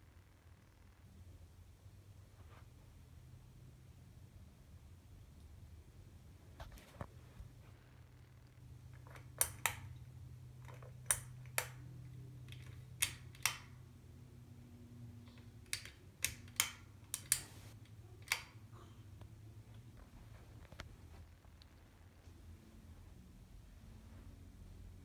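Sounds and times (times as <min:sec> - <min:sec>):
ceiling fan motor hum: 0:01.2 - 0:25.0
pull-chain switch clicks: 0:09.0 - 0:10.0, 0:10.6 - 0:11.8, 0:12.4 - 0:13.8, 0:15.3 - 0:18.6.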